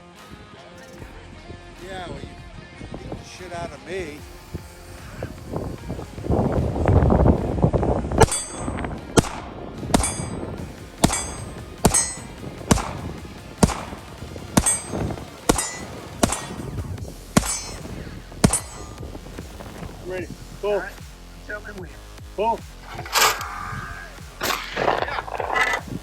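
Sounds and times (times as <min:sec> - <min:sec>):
low rumble: 0:04.3 - 0:26.0
bullets clanging on steel targets: 0:08.2 - 0:09.4, 0:10.0 - 0:19.0, 0:24.4 - 0:25.8.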